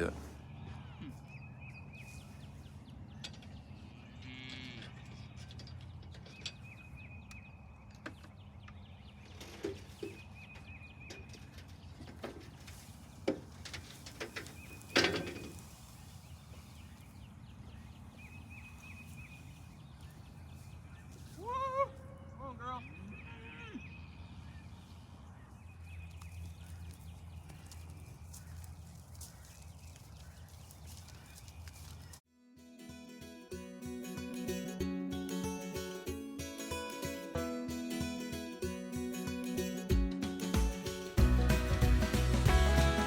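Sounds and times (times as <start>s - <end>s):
faint cattle sounds: 0.0s - 1.3s, 3.8s - 5.2s.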